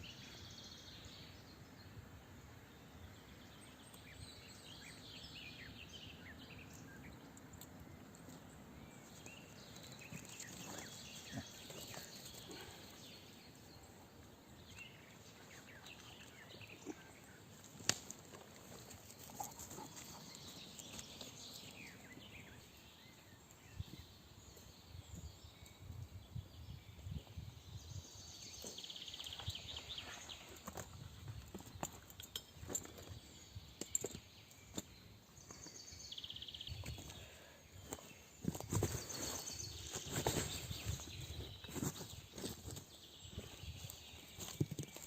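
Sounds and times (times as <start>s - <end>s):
rustling and crackling: 37.9s - 45.0s.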